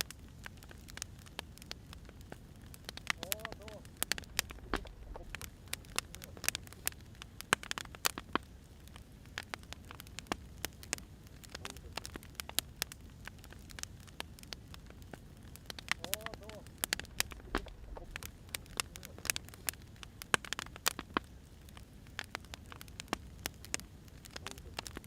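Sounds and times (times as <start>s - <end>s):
firewood crackling and popping: 0.0s - 25.0s
low steady rumble: 1.6s - 7.8s, 8.6s - 20.3s.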